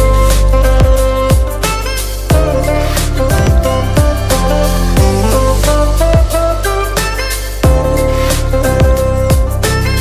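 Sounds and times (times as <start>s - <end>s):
background music with beat: 0.0s - 10.0s
deep drum hit: 3.3s - 5.2s.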